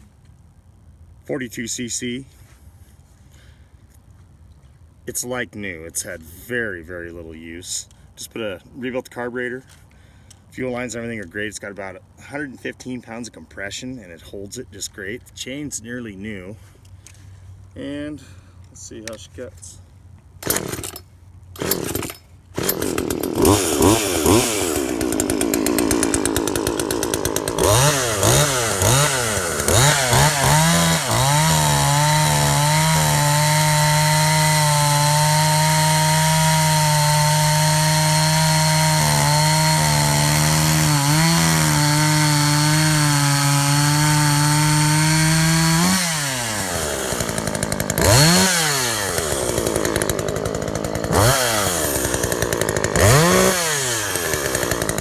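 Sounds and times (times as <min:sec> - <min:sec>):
chainsaw revving: 0:20.4 - 0:55.0.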